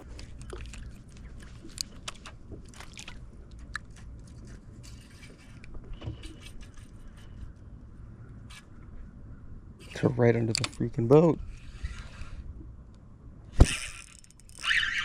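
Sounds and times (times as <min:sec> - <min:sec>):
fishing tackle clicks and scrapes: 0:00.0 - 0:07.6, 0:09.8 - 0:12.4, 0:13.6 - 0:15.0.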